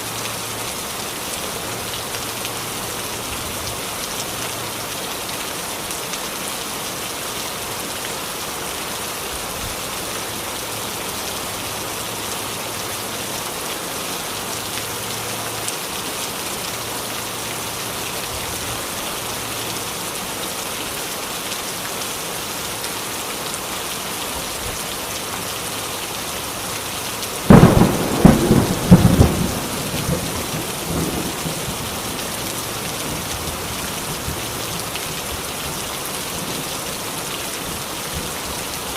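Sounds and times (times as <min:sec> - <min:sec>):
heavy rain pouring: 0:00.0 - 0:38.9
thunderclap rumbling: 0:27.5 - 0:32.4.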